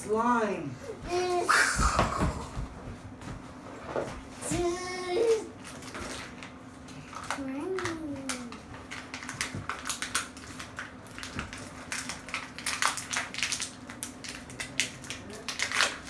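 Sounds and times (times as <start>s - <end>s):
plastic packaging crinkling: 5.6s - 16.0s.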